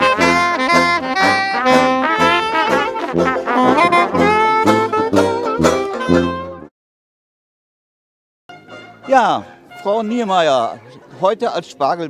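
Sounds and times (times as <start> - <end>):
brass band music: 0.0 - 6.7, 8.5 - 10.9
pulsing bass line: 0.0 - 6.7.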